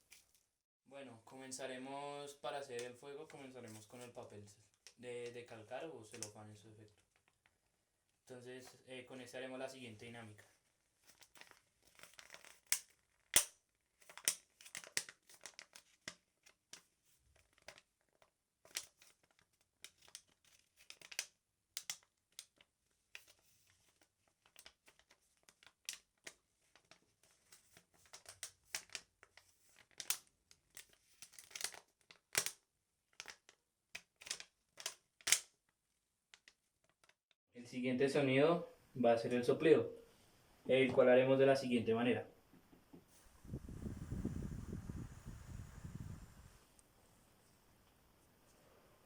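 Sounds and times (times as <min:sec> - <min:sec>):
tracing paper crumpling and crackling: 0:10.0 - 0:35.6, 0:36.3 - 0:37.2.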